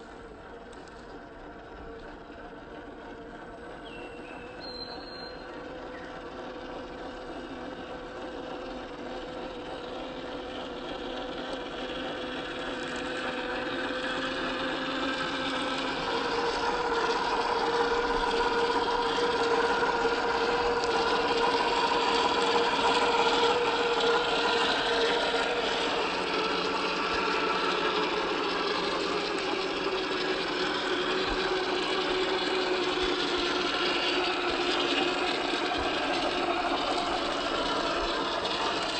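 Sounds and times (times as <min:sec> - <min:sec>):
rc car motor whining: 0:10.9 - 0:38.9.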